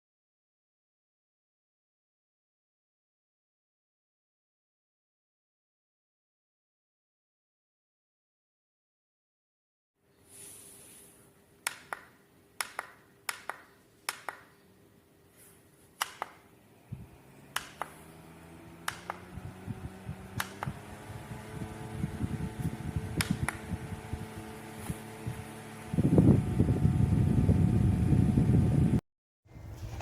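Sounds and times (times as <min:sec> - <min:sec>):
fan motor humming: 0:16.0 - 0:30.0.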